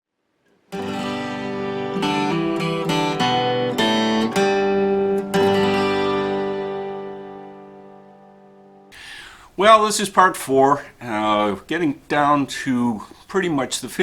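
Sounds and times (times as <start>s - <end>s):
acoustic guitar strummed chords: 0.7s - 9.2s.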